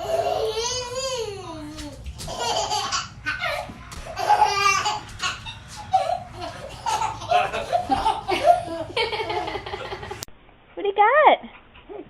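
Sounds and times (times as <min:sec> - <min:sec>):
baby laughing: 0:02.3 - 0:10.2
people laughing: 0:04.9 - 0:10.3.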